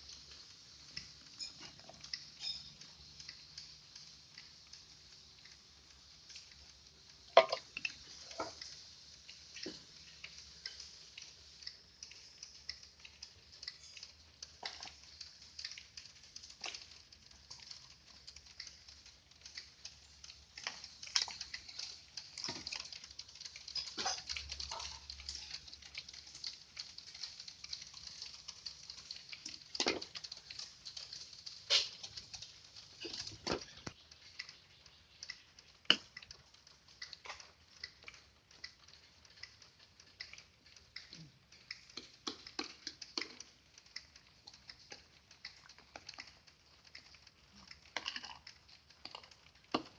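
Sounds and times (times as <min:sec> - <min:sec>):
faint steady hiss: 0:00.0 - 0:49.9
kitchen utensils clicking and knocking: 0:07.4 - 0:07.7.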